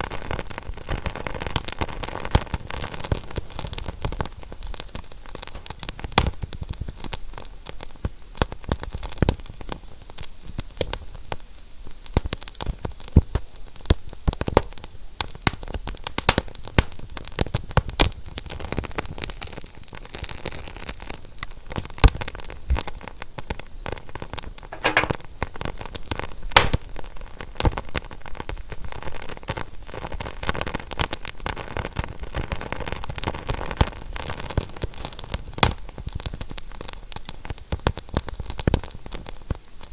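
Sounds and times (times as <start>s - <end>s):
wood fire crackling: 12.1s - 23.9s, 24.7s - 28.2s.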